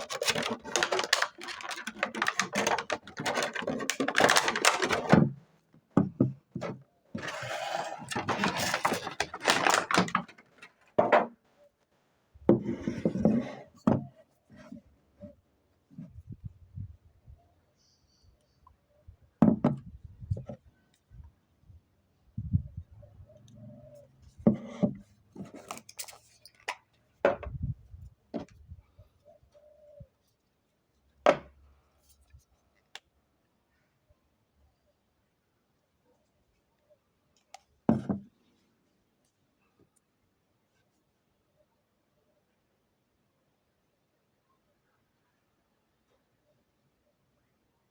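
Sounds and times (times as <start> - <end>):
packaging rustling and sliding: 0.0 - 5.4, 7.2 - 10.8.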